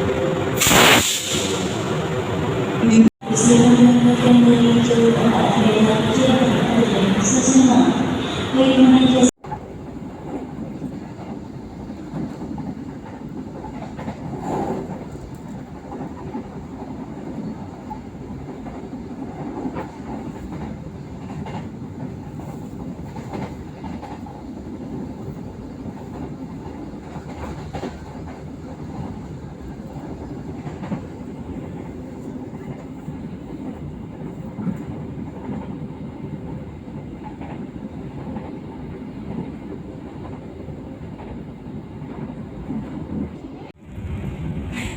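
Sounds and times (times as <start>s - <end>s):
train wheels rumbling on rail: 0.0s - 44.9s.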